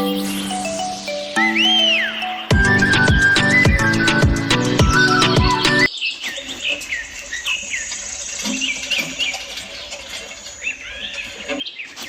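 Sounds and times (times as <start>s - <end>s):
background music: 0.0s - 5.9s
small birds chirping: 0.0s - 12.0s.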